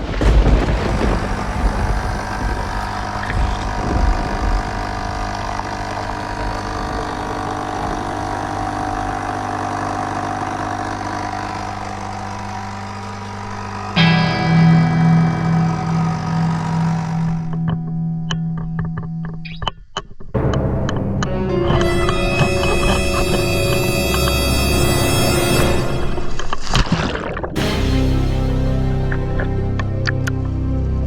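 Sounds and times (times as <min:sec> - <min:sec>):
engine running steadily: 0:00.0 - 0:18.4, 0:20.4 - 0:26.6, 0:27.6 - 0:31.0
guitar music: 0:13.9 - 0:26.7, 0:27.6 - 0:31.0.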